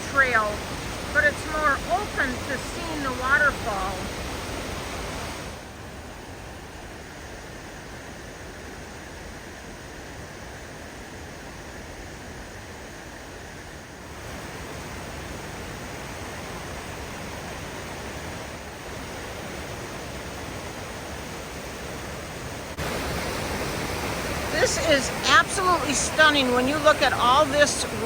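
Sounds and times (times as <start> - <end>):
waterfall roaring: 0.0 - 7.5, 14.0 - 28.0.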